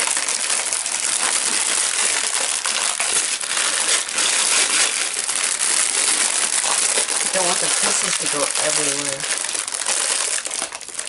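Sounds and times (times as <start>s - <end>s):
plastic packaging crinkling: 0.0s - 11.0s
plastic pieces clicking and rattling: 0.0s - 11.0s.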